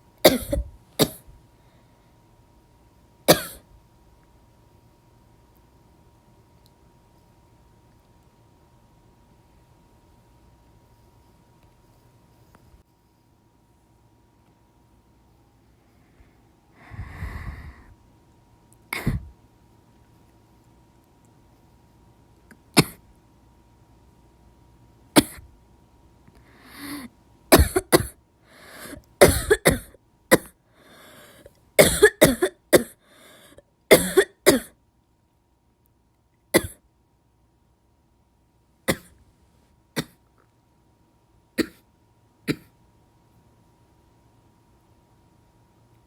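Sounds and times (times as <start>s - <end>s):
person coughing: 0.2s - 1.3s, 3.3s - 3.7s, 18.9s - 19.3s, 22.8s - 23.0s, 25.2s - 25.5s, 26.7s - 28.2s, 28.8s - 30.5s, 31.3s - 34.8s, 36.6s - 36.8s, 38.9s - 39.2s, 40.0s - 40.2s, 41.6s - 41.8s, 42.5s - 42.7s.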